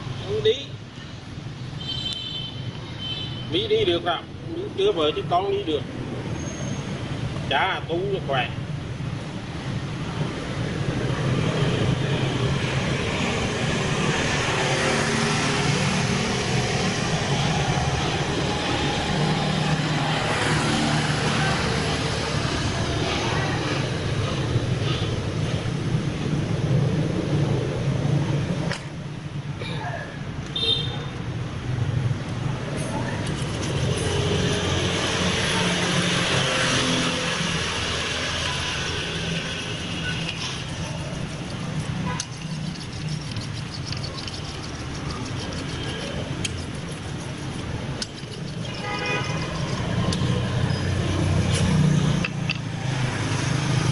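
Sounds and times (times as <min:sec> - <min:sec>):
street traffic engine rumble: 0:00.0 - 0:53.9
vehicle passing close: 0:09.0 - 0:28.7, 0:31.8 - 0:53.9.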